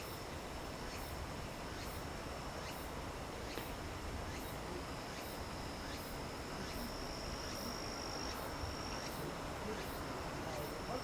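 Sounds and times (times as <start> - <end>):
insect high steady trill: 4.3 - 11.0.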